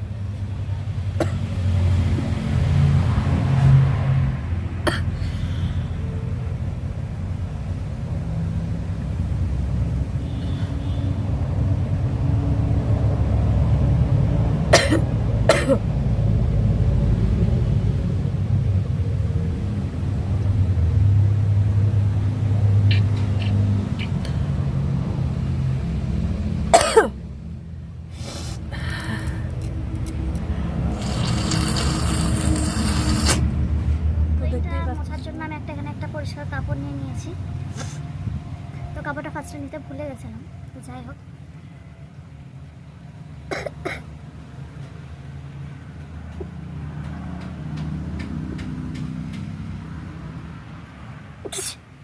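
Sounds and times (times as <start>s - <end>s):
sharp breathy bursts: 5.0s - 6.2s, 10.3s - 11.1s, 28.0s - 29.8s, 30.4s - 33.6s
loud short sneeze: 51.5s - 51.8s.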